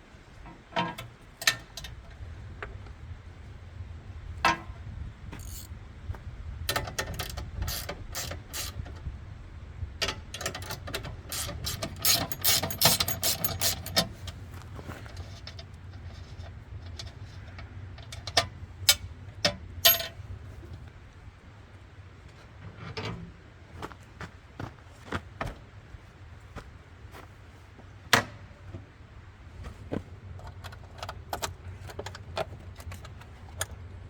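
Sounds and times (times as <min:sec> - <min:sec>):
metallic clicks and rattles: 0:00.4 - 0:02.2, 0:05.4 - 0:05.7, 0:06.7 - 0:09.1, 0:10.0 - 0:14.4, 0:15.1 - 0:20.8, 0:30.3 - 0:33.9.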